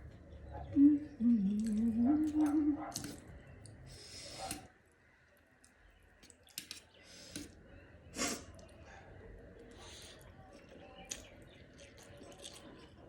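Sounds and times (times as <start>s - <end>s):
chewing with wet mouth smacks: 1.4s - 3.8s, 9.6s - 13.0s.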